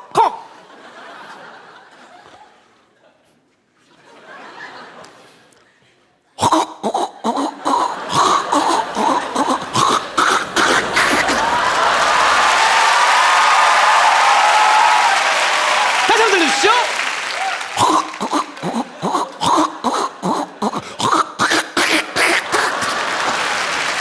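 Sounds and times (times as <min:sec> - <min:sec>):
audience laughter: 0:00.5 - 0:05.5, 0:07.3 - 0:24.0
person imitating a train: 0:06.4 - 0:11.8, 0:17.8 - 0:23.0
applause: 0:08.1 - 0:20.2, 0:22.0 - 0:24.0.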